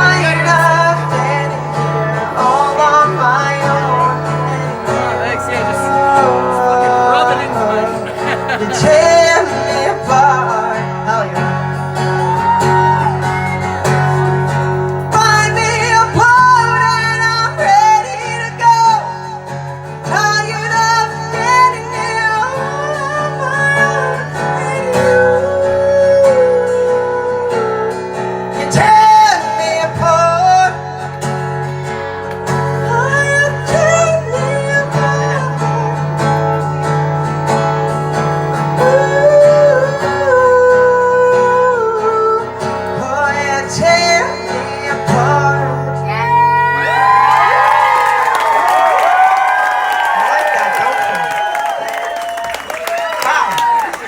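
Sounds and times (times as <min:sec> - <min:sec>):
person singing: 0:00.0 - 0:31.3, 0:32.5 - 0:37.8, 0:38.6 - 0:47.3
guitar accompaniment: 0:00.0 - 0:54.0.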